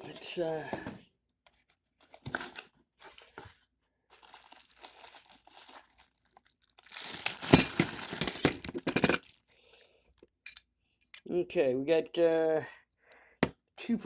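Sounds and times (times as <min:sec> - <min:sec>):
packaging crinkling and tearing: 0:04.1 - 0:09.4
packaging rustling: 0:04.1 - 0:09.4.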